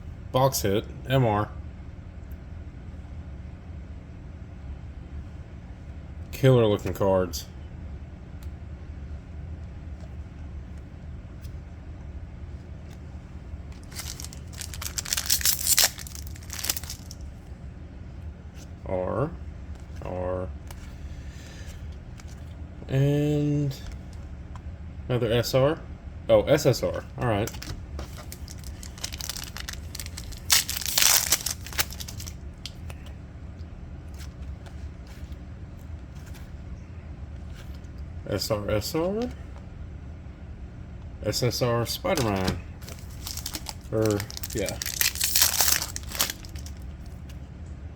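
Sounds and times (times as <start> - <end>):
steady low hum: 0.0 - 47.9
wrapper tearing and crinkling: 13.8 - 17.2, 27.5 - 32.8, 42.8 - 46.8
cards ticking when handled: 27.2 - 33.1, 42.2 - 46.8.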